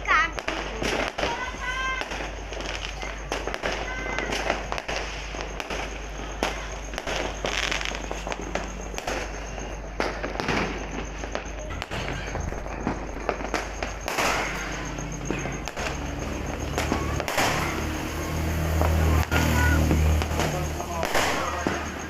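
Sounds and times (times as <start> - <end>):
fireworks bangs: 0.0 - 22.0
fireworks crackling: 0.0 - 22.0
firecracker pops: 0.1 - 22.0.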